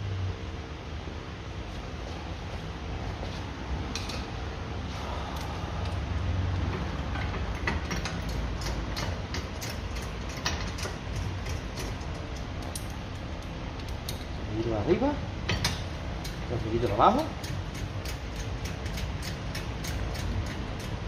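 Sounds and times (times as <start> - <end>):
steady low hum: 0.0 - 21.0
hand ratchet clicking: 7.2 - 14.3, 17.2 - 21.0.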